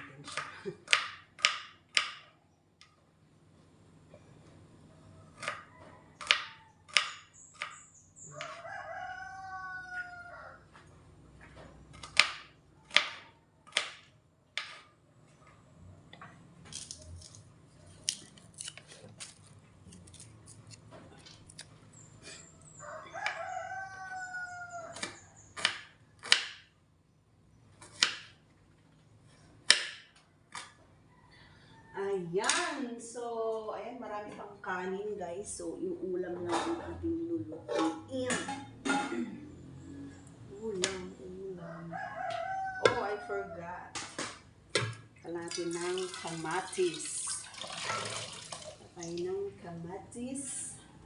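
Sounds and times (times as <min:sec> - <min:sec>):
rooster crowing: 0:04.9 - 0:06.9, 0:08.2 - 0:10.8, 0:22.3 - 0:25.4, 0:31.0 - 0:32.1, 0:41.4 - 0:43.9.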